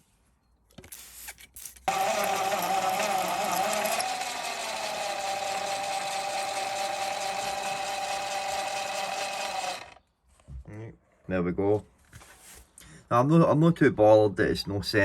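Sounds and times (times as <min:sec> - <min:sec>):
lathe motor whine: 0:01.9 - 0:10.0.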